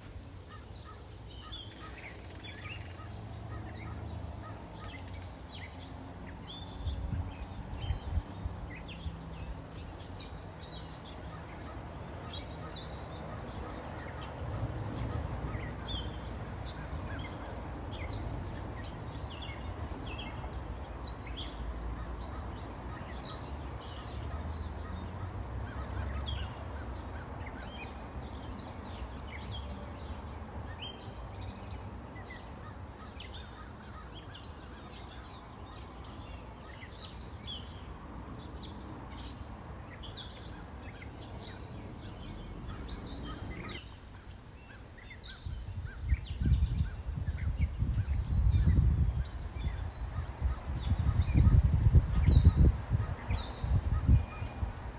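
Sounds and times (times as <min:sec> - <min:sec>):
small birds chirping: 0:00.0 - 0:54.9.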